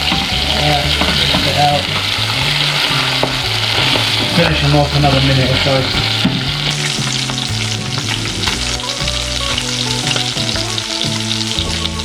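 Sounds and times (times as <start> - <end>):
fish sizzling in frying pan: 0.0 - 12.0.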